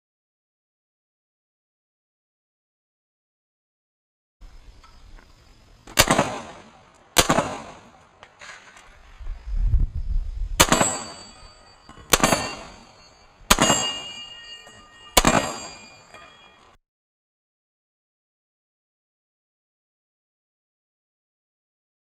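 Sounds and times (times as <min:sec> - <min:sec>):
pistol shots: 0:05.8 - 0:08.2, 0:10.6 - 0:14.2, 0:15.2 - 0:15.9
steel targets ringing: 0:10.6 - 0:16.8.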